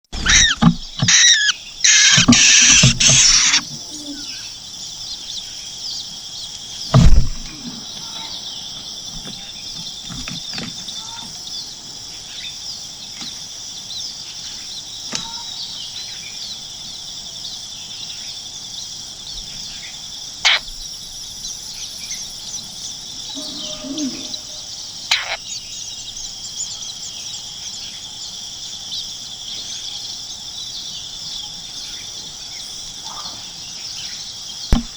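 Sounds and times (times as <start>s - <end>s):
nestling birds begging: 0.0s - 34.9s
bird chirps: 0.2s - 12.7s, 18.8s - 34.9s
high-pitched insect chorus: 0.2s - 34.9s
loud thump: 6.9s - 7.7s.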